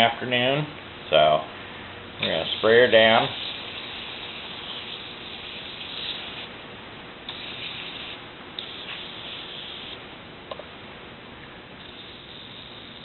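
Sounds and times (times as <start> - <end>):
aerosol can spraying: 3.2 - 6.5, 7.3 - 10.0.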